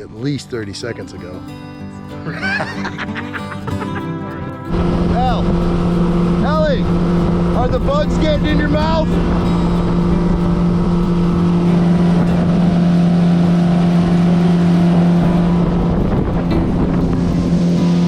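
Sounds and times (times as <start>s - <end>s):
boat jet motor running: 4.5s - 18.0s.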